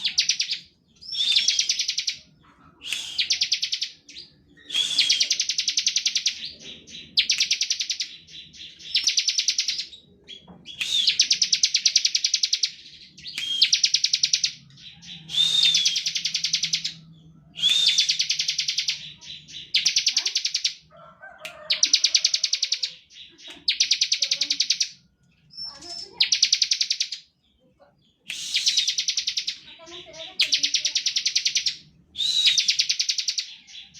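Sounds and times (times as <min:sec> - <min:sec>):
bird short chirps: 0:02.8 - 0:03.5, 0:04.6 - 0:05.6.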